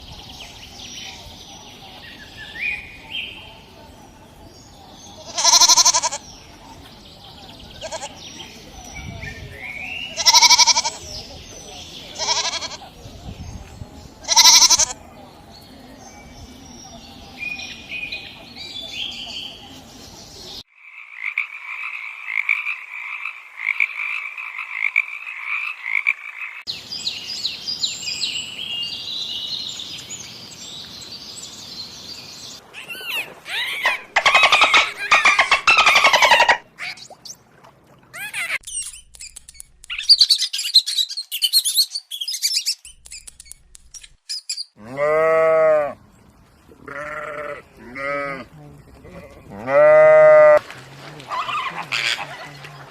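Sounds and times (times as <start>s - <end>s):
birds chirping: 0.0s - 20.7s, 24.0s - 52.9s
high-pitched animal calls: 5.3s - 6.2s, 10.2s - 11.0s, 32.8s - 37.2s
frog chorus croaking: 20.7s - 26.7s, 33.3s - 36.7s.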